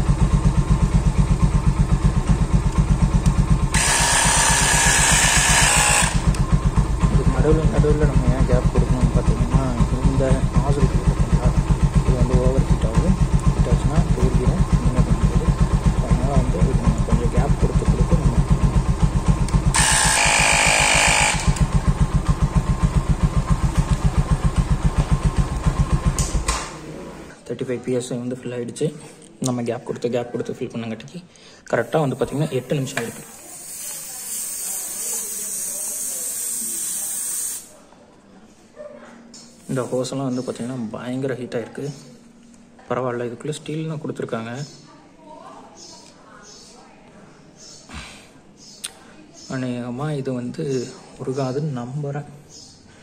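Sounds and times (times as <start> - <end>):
motorcycle engine idling: 0.0 - 20.4, 21.0 - 27.4
air pump hissing: 3.3 - 6.5, 19.4 - 21.8, 31.8 - 37.7.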